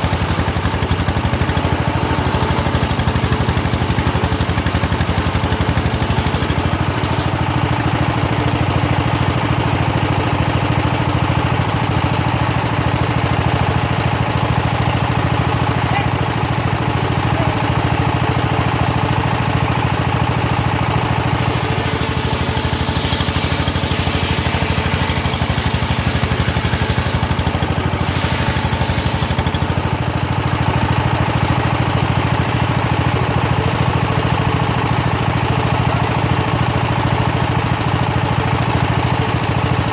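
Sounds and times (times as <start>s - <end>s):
engine running steadily: 0.0s - 39.9s
saw blade cutting wood: 21.2s - 30.1s, 39.0s - 39.9s.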